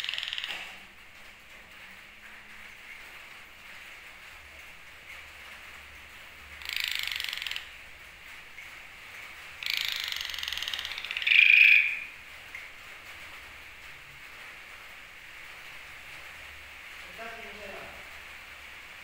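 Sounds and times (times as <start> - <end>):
starling harsh rattling calls: 0.0 - 0.7, 6.6 - 7.7, 9.6 - 12.1.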